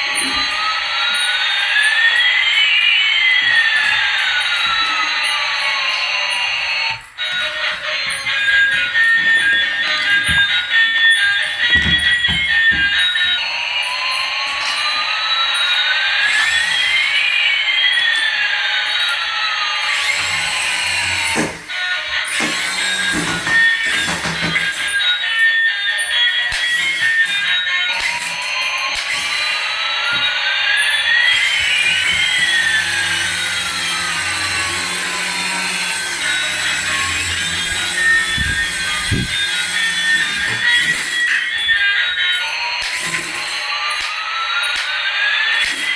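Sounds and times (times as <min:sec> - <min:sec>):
toy helicopter motors whining: 0:00.0 - 0:45.9
sliding electronic tones: 0:30.8 - 0:41.4.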